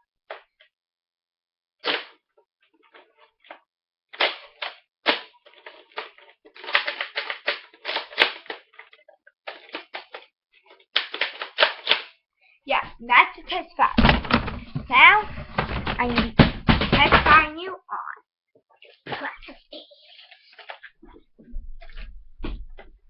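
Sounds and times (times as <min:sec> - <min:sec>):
plastic toy blaster clicks and rattles: 0:04.1 - 0:12.2.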